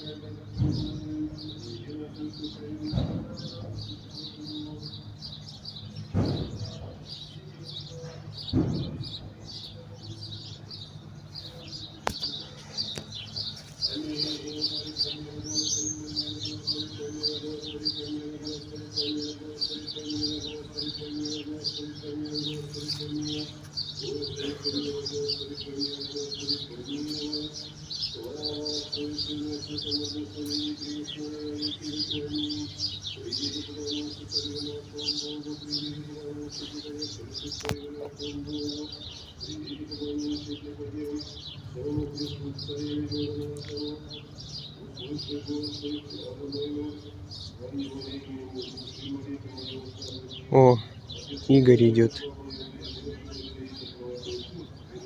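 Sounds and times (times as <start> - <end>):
small birds chirping: 0.0 - 55.0
dull knocks: 6.1 - 7.0, 8.5 - 9.4.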